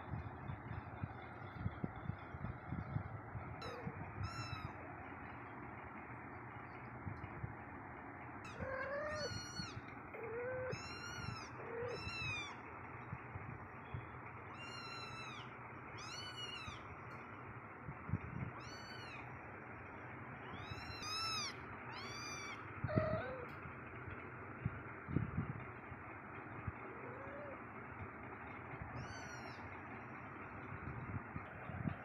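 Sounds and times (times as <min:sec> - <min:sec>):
cat meowing: 0:03.6 - 0:04.9, 0:08.4 - 0:12.6, 0:14.6 - 0:16.8, 0:18.5 - 0:19.3, 0:20.4 - 0:23.5, 0:26.9 - 0:27.6, 0:29.0 - 0:29.7.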